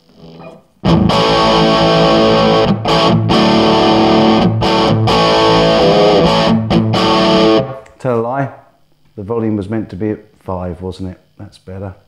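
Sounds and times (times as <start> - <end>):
overdriven electric guitar chords: 0.0 - 8.0.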